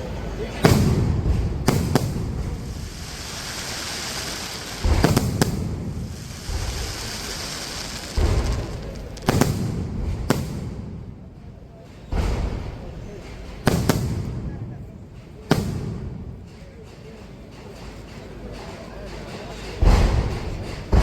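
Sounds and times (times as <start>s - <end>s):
fireworks booming: 0.4s - 16.6s, 19.8s - 21.0s
high crackling hiss: 1.8s - 9.8s.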